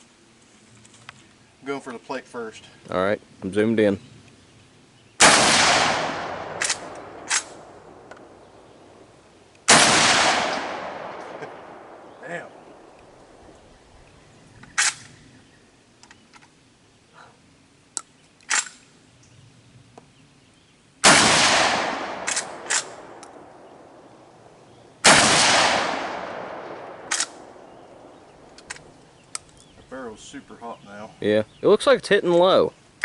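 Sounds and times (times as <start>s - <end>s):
shotgun shots with rolling echo: 5.2s - 8.4s, 9.7s - 12.9s, 21.0s - 24.1s, 25.0s - 28.5s.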